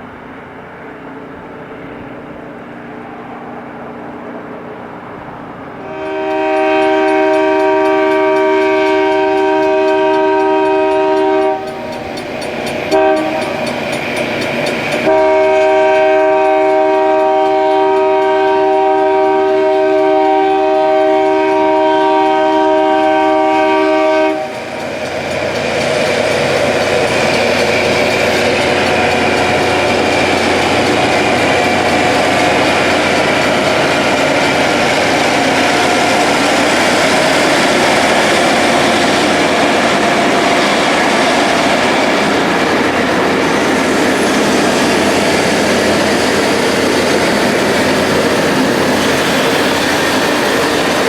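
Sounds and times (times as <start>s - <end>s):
passing train rushing noise: 0.0s - 51.0s
train rumbling: 0.0s - 51.0s
train air horn: 5.8s - 12.1s, 12.7s - 13.8s, 15.0s - 24.9s, 26.8s - 42.7s.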